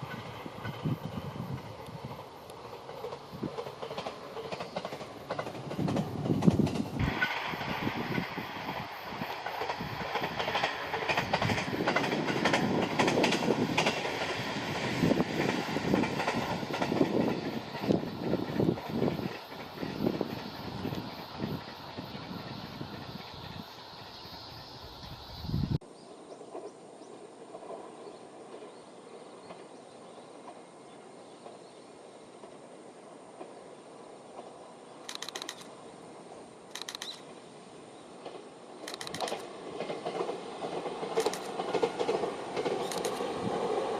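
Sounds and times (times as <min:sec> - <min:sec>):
train wheels clattering on rails: 0:00.0 - 0:25.8, 0:38.1 - 0:43.9
high insect drone: 0:00.0 - 0:26.1
soft chirps and ticks: 0:01.8 - 0:06.8, 0:35.1 - 0:35.7, 0:36.7 - 0:37.3, 0:38.2 - 0:39.5.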